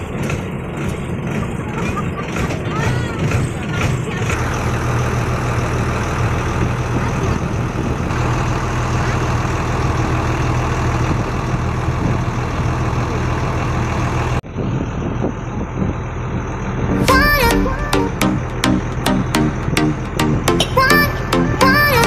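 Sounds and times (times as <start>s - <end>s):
boat engine running: 16.8s - 22.0s
music: 16.9s - 22.0s.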